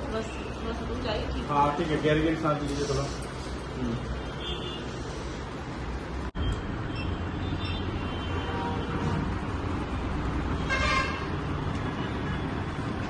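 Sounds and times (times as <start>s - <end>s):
low traffic rumble: 0.0s - 13.0s.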